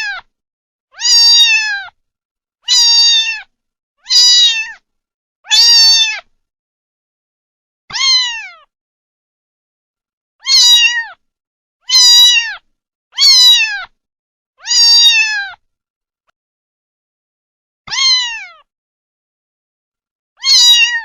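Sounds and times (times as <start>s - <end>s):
kitten meowing: 0.0s - 0.3s, 1.0s - 2.0s, 2.7s - 4.8s, 5.5s - 6.3s, 7.9s - 8.7s, 10.4s - 11.2s, 11.8s - 12.6s, 13.2s - 13.9s, 14.6s - 15.6s, 17.9s - 18.7s, 20.4s - 21.0s.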